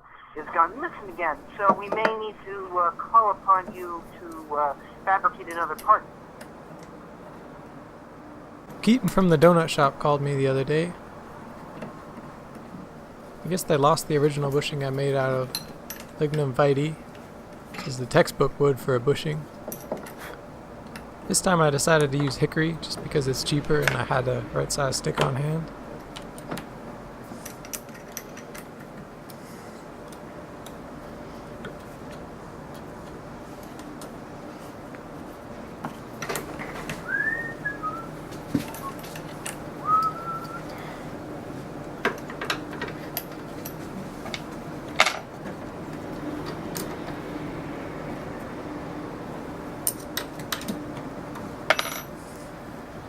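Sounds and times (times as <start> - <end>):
faint steady hum: 0.0 - 53.0.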